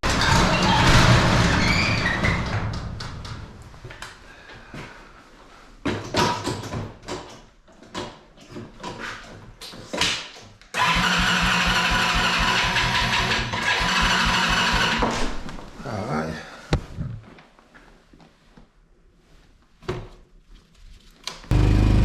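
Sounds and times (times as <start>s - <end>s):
small engine cranking: 10.8s - 15.0s
small engine idling: 10.8s - 15.0s, 21.5s - 22.0s.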